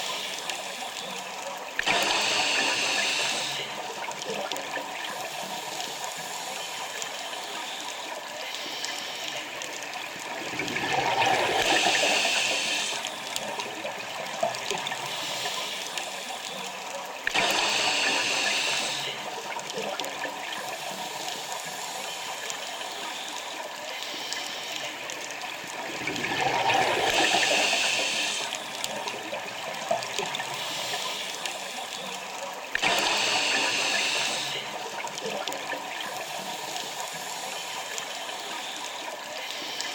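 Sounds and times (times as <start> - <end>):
steady underwater hiss: 0.0 - 39.9
rush of bubbles: 1.7 - 7.2, 9.1 - 22.8, 24.6 - 39.3.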